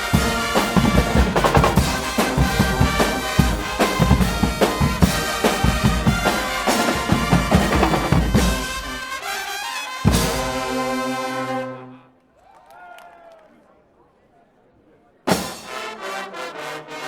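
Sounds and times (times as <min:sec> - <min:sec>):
drums pounding a beat: 0:00.0 - 0:09.3, 0:10.0 - 0:11.0, 0:15.3 - 0:15.8
carnival band playing: 0:00.0 - 0:11.9, 0:15.3 - 0:17.0
brass horns melody: 0:00.0 - 0:12.1, 0:15.3 - 0:17.0.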